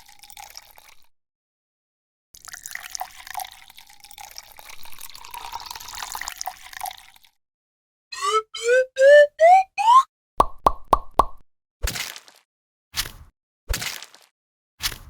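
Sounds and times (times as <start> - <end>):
rising bloop sound effects: 8.2 - 11.4.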